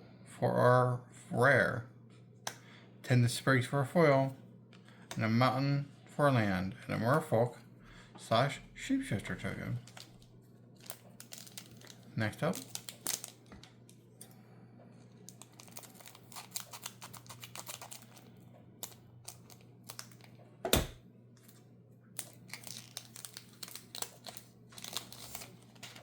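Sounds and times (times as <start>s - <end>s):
foil wrapper crinkling and tearing: 9.8s - 14.0s, 15.0s - 20.4s, 21.4s - 26.0s.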